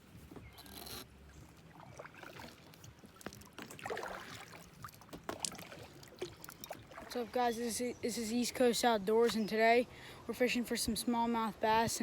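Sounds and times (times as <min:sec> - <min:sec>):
paddle splashes: 0:00.5 - 0:07.4
dripping water: 0:01.7 - 0:07.2.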